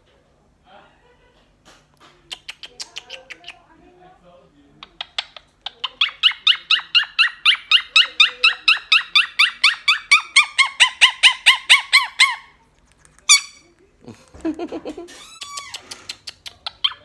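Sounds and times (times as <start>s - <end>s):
parrot chirping calls: 2.3s - 3.6s, 4.8s - 12.6s, 13.3s - 13.7s, 15.1s - 17.0s.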